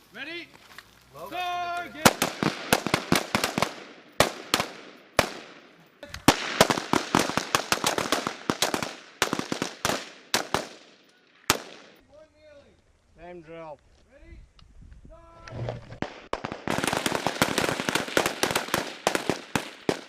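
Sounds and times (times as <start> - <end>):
assault rifles firing: 2.0 - 12.0, 16.0 - 20.0.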